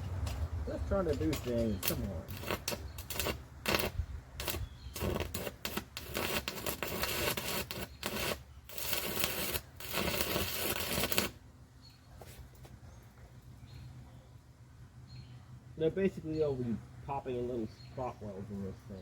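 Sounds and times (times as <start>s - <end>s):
welding arc crackling: 0.0s - 11.4s.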